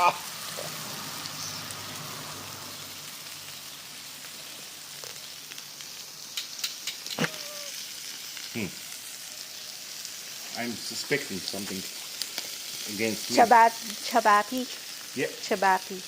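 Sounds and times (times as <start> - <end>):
meat sizzling on grill: 0.0 - 16.0
fat popping and crackling: 4.8 - 8.9, 11.5 - 12.8.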